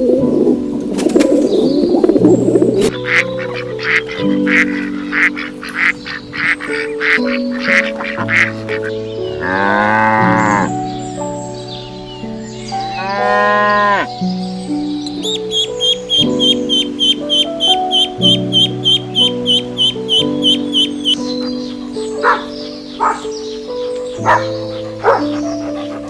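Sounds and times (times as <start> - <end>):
farm animal calls: 2.9 - 10.9, 12.7 - 14.2, 15.4 - 26.0.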